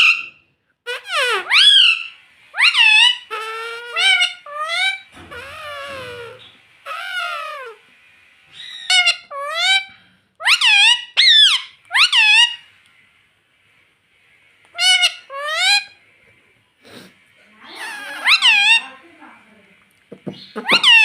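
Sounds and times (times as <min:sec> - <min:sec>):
parrot squawking: 0:00.0 - 0:07.9, 0:08.5 - 0:12.8, 0:14.7 - 0:16.1, 0:17.6 - 0:19.2, 0:20.3 - 0:21.0.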